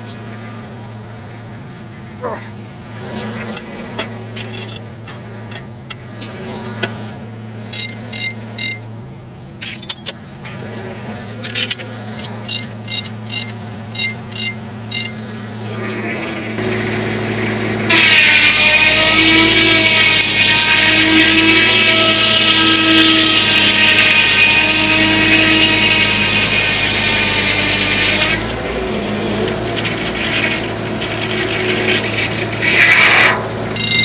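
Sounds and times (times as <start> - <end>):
tractor engine running: 0.0 - 34.0
saw blade cutting whine: 3.2 - 34.0
sharp metallic clinks: 7.7 - 9.0, 9.6 - 10.3, 11.4 - 15.2, 33.8 - 34.0.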